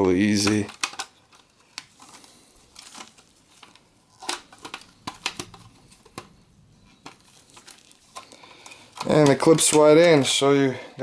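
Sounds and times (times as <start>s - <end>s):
plastic clicks and knocks: 3.0s - 6.4s.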